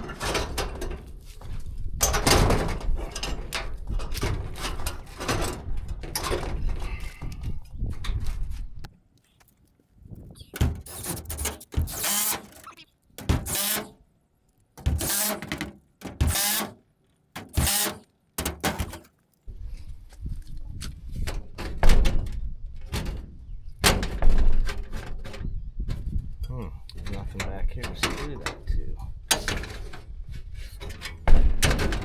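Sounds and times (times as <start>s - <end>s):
short sharp noise bursts: 10.4s - 12.8s, 17.5s - 18.1s.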